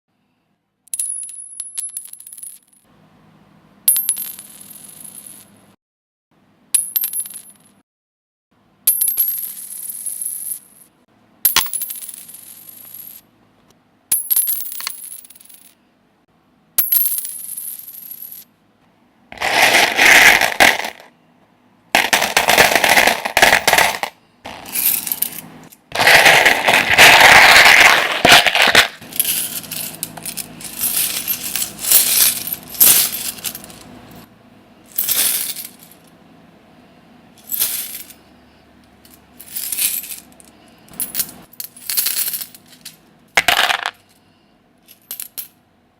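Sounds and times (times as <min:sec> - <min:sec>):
coins dropping and clinking: 0:00.9 - 0:02.8, 0:03.9 - 0:05.6, 0:06.8 - 0:07.8, 0:08.9 - 0:10.9, 0:11.5 - 0:13.2, 0:14.1 - 0:15.7, 0:16.8 - 0:18.5, 0:19.4 - 0:21.1, 0:22.0 - 0:34.3, 0:34.9 - 0:36.1, 0:37.4 - 0:38.2, 0:39.1 - 0:44.1, 0:44.9 - 0:45.6.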